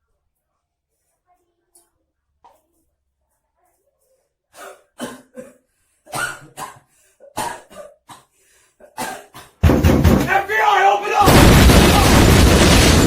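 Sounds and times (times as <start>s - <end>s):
person coughing: 4.6s - 9.6s
loud burst of noise: 11.2s - 13.0s.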